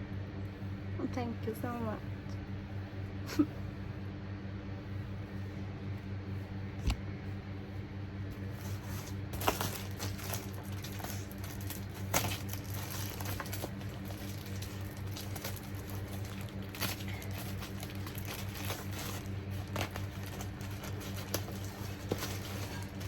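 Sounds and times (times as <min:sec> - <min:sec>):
low hum: 0:00.0 - 0:23.0
packaging rustling and crinkling: 0:08.4 - 0:23.0.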